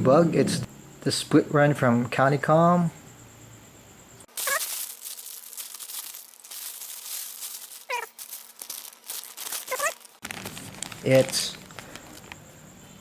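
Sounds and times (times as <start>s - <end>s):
knife cutting packaging: 4.3s - 11.3s
packaging crinkling and rustling: 4.3s - 12.4s
high-pitched wavering cries: 4.4s - 10.1s.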